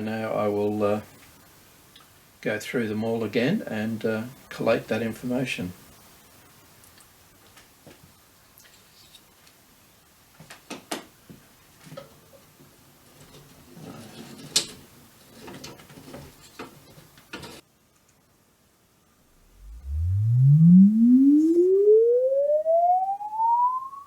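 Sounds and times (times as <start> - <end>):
rising sine test tone: 19.3 - 24.0.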